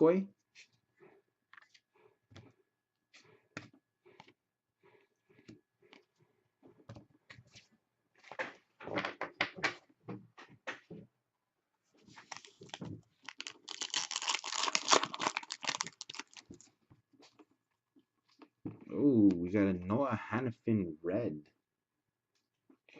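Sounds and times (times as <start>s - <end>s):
foil wrapper crinkling: 12.2s - 16.7s.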